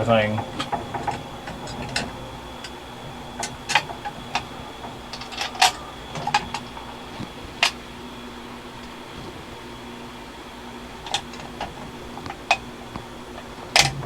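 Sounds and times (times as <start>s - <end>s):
light clicks and knocks: 0.0s - 9.6s
steady fan hum: 0.0s - 14.0s.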